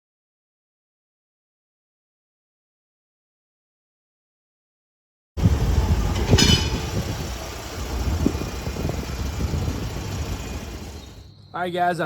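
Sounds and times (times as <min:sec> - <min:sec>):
vehicle engine rumbling: 0:05.4 - 0:11.3.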